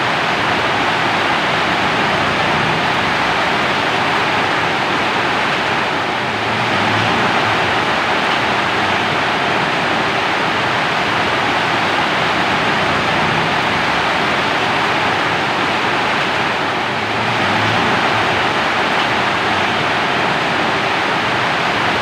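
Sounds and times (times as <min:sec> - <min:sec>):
heavy rain hiss: 0:00.0 - 0:22.0.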